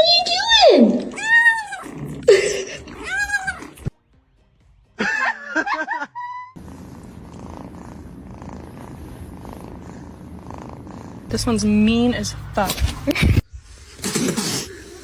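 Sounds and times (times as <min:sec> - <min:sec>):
cat purring: 0:06.6 - 0:11.4.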